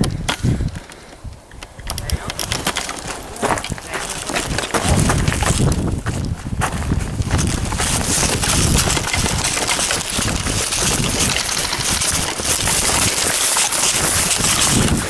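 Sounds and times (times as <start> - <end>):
clothing and gear rustling: 2.0 - 15.0
footsteps in undergrowth: 2.0 - 15.0.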